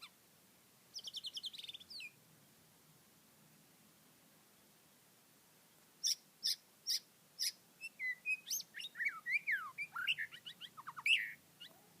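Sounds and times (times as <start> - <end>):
small birds chirping and twittering: 0.0 - 0.2, 0.8 - 2.7, 6.0 - 12.0.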